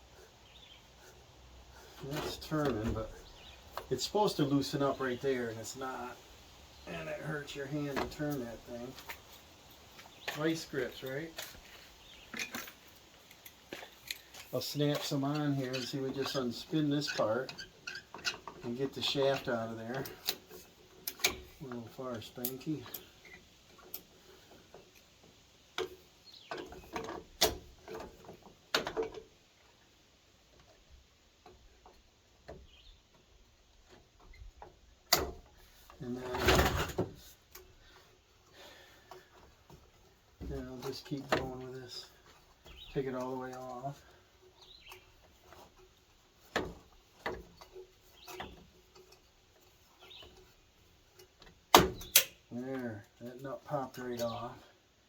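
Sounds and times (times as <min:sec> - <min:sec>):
metal clicks and clanks of pliers: 0:51.2 - 0:52.4.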